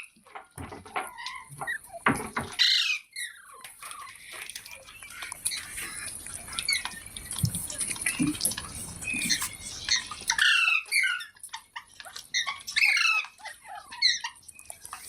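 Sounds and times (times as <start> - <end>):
parrot squawking: 9.1 - 14.4.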